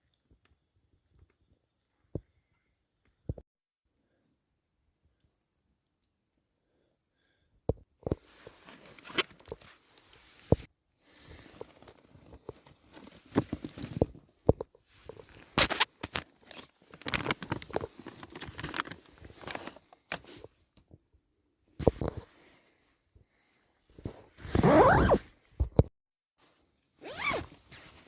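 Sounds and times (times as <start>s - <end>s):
camping gear rustling and clicking: 8.1s - 20.6s, 23.9s - 25.9s, 27.0s - 28.0s.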